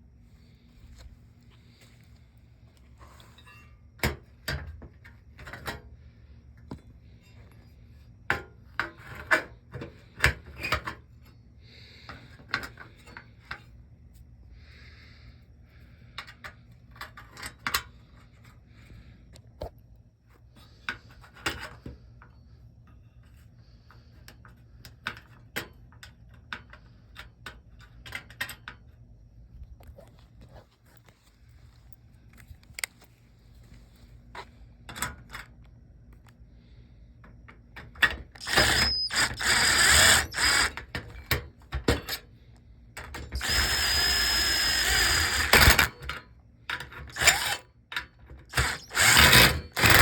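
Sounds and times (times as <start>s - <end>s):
metal parts knocking and clanking: 43.0s - 50.0s.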